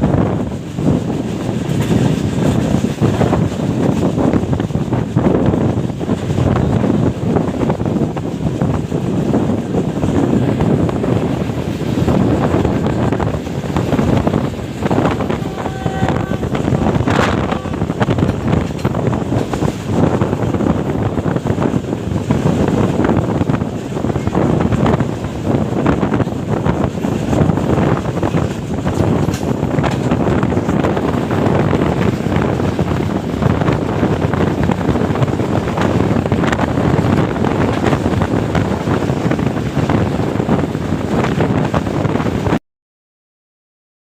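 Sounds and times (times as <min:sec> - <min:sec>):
train rumble: 0:00.0 - 0:42.6
wind buffeting microphone: 0:00.0 - 0:42.6.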